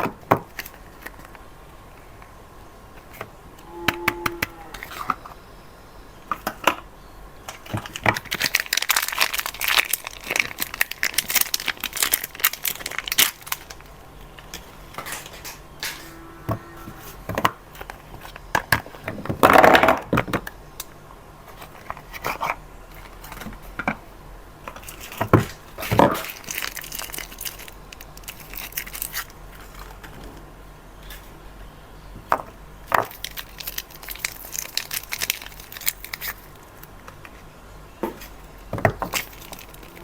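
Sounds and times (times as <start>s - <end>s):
packaging crinkling: 7.5s - 15.4s, 24.7s - 30.3s, 32.8s - 37.4s, 38.2s - 40.0s
packaging tearing: 7.8s - 13.9s, 25.8s - 30.0s, 33.0s - 37.0s, 39.0s - 40.0s.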